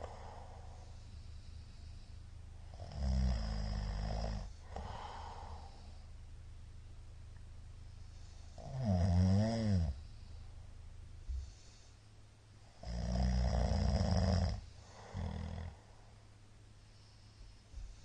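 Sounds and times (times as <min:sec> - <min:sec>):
man snoring loudly: 0:02.7 - 0:05.9, 0:08.5 - 0:10.1, 0:12.8 - 0:15.8.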